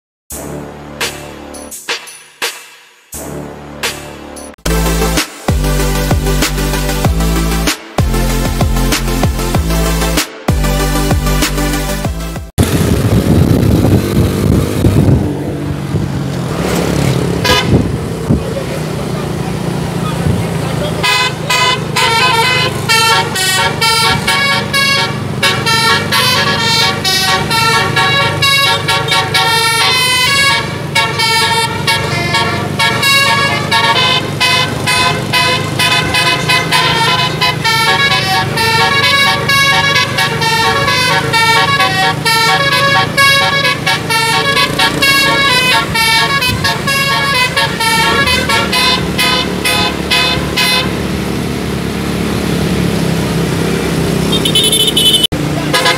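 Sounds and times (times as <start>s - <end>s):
musical air horn melody: 0.3s - 1.8s, 3.2s - 12.5s, 17.4s - 18.0s, 20.9s - 51.2s, 54.3s - 55.9s
bus engine low hum: 12.6s - 55.9s.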